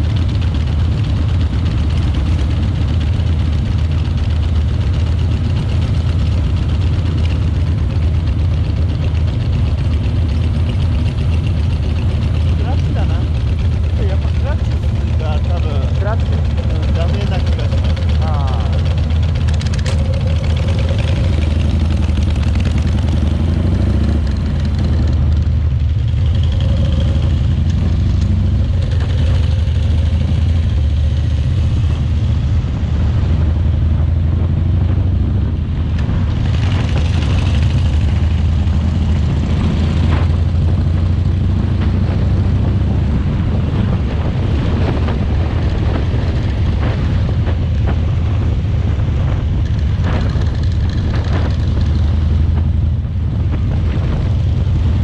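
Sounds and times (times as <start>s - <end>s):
motorcycle engine running: 0.0s - 55.0s
wind noise: 18.6s - 55.0s.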